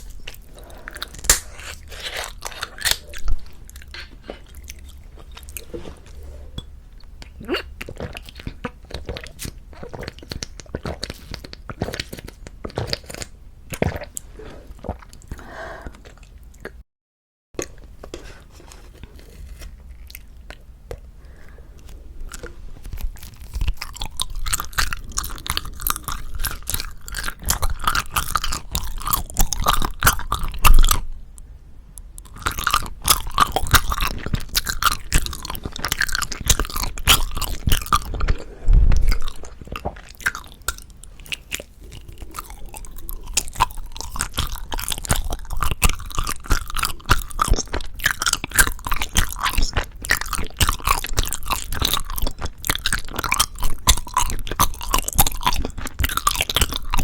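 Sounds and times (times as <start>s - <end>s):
chewing with wet mouth clicks: 6.6s - 16.8s, 21.8s - 31.1s, 32.0s - 57.0s.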